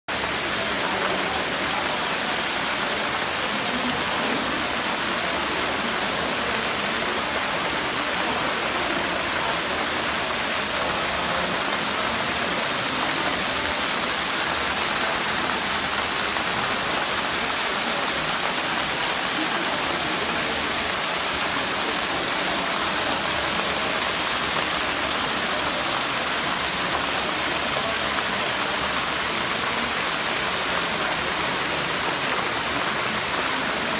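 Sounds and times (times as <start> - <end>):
steady rain falling: 0.1 - 33.9.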